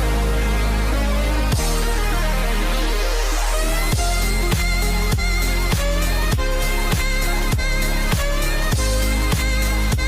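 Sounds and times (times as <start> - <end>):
electronic music with heavy bass: 0.0 - 10.0.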